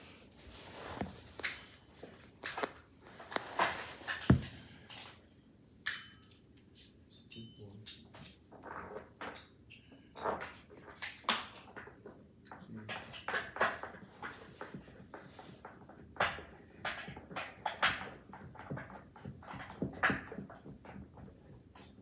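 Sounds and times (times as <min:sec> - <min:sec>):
furniture parts clicking and knocking: 0:00.0 - 0:05.1.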